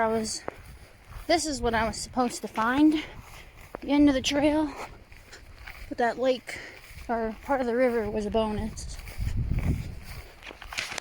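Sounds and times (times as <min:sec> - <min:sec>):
footsteps on a trail: 0:00.0 - 0:11.0
low rumble on microphone: 0:08.2 - 0:10.4.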